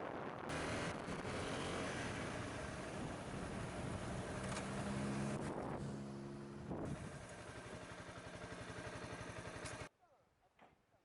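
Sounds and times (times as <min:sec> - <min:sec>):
wind rushing over microphone: 0:00.0 - 0:01.4
motorcycle engine running: 0:00.5 - 0:09.9.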